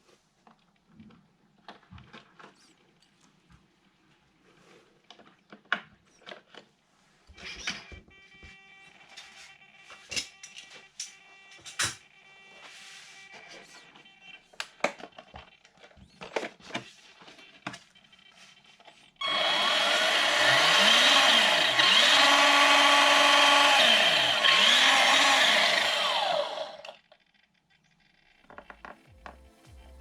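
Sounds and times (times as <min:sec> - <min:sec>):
rc truck motor whining: 0:19.2 - 0:27.0.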